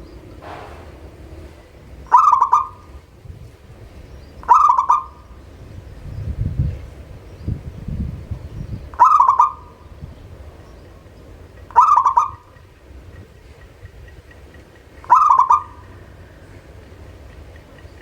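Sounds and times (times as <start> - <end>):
dove cooing: 0.0 - 3.0, 4.4 - 5.4, 9.0 - 10.0, 11.7 - 12.7, 15.0 - 16.7
low rumbling noise: 0.0 - 11.8.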